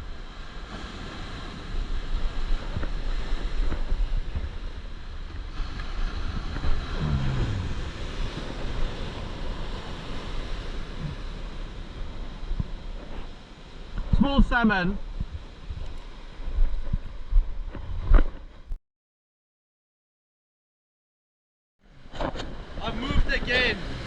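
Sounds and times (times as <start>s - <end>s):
ocean surf on beach: 0.0s - 18.6s, 21.8s - 24.0s
wind buffeting microphone: 15.0s - 18.7s.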